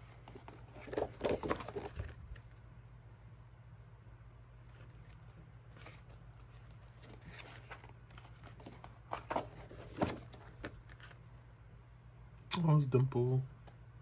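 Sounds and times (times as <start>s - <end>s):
paper pages rustling: 0.0s - 2.5s, 4.7s - 11.2s
low steady hum: 0.0s - 14.0s.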